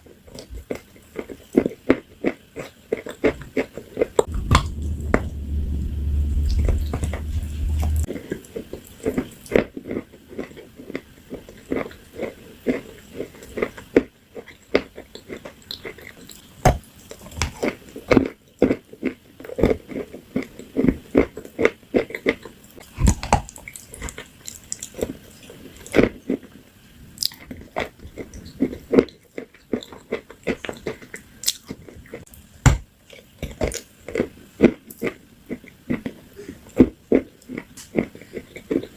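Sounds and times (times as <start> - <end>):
crunchy food being chewed: 0.0 - 4.8, 6.6 - 38.9
low steady hum: 4.2 - 9.5.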